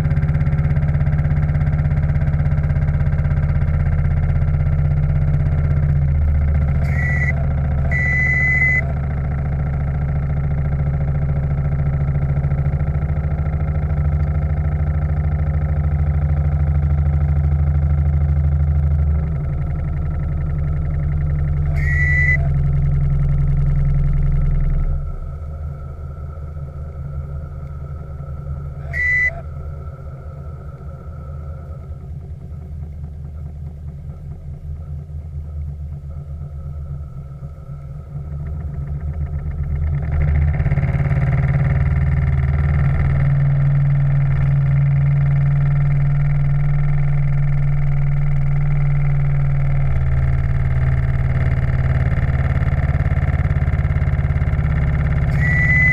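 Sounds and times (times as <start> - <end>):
steam plant humming: 1.8 - 55.9
brief high-pitched tones: 6.8 - 8.9, 21.7 - 22.6, 55.3 - 55.9.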